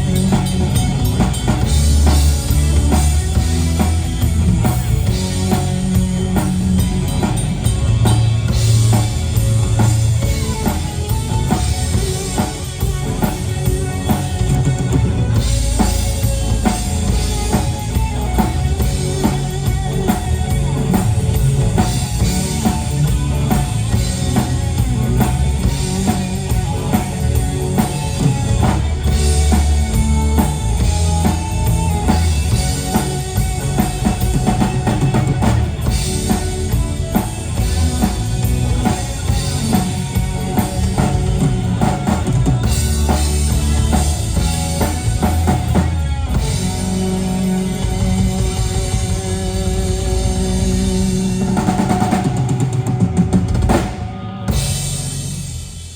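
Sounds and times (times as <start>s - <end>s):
drum kit beat: 0.0s - 55.9s
rock band playing: 0.0s - 55.9s.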